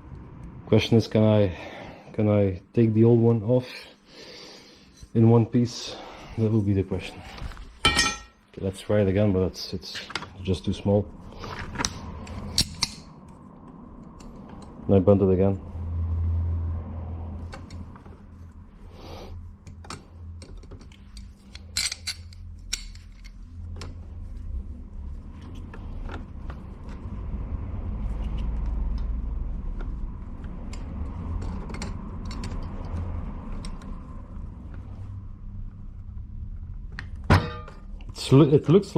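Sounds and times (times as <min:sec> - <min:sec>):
metal linkage clicks and scrapes: 0:11.5 - 0:13.4, 0:14.0 - 0:14.8, 0:19.6 - 0:24.0, 0:29.8 - 0:34.1.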